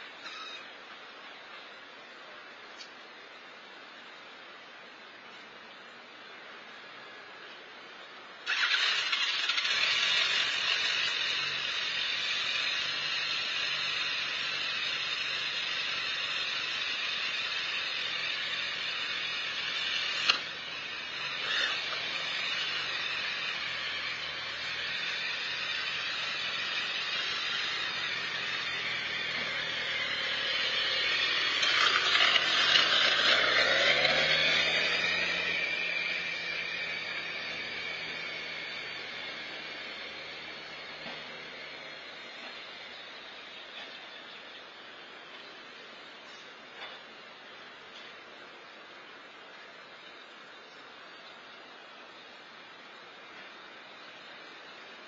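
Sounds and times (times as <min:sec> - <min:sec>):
motorcycle engine revving: 0:08.5 - 0:43.8.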